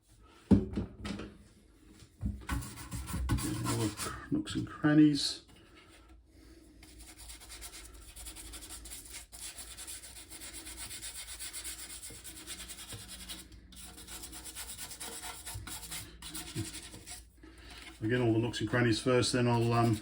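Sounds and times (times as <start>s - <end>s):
scrubbing plastic case: 2.5s - 4.2s, 10.3s - 20.0s.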